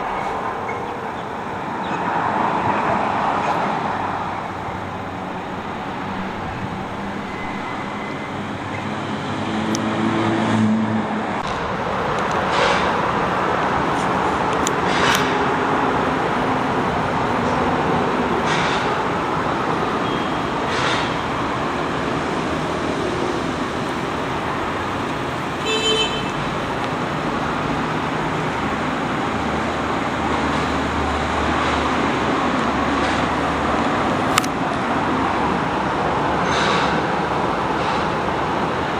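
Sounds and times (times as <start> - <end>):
traffic-like background noise: 0.0 - 38.9
sharp click: 14.0 - 15.3, 34.3 - 34.6.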